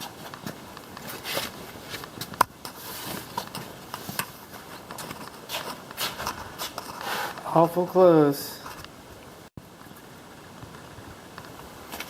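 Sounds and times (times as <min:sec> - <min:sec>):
light footsteps: 0:00.0 - 0:07.6.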